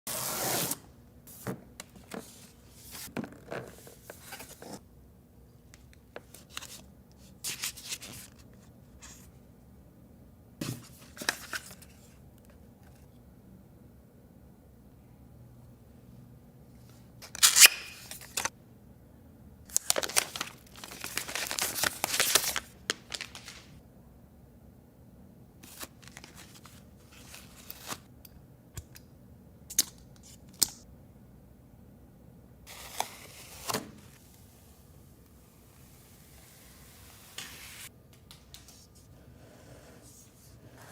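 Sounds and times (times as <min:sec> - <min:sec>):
cardboard tearing and rustling: 0:19.9 - 0:22.6.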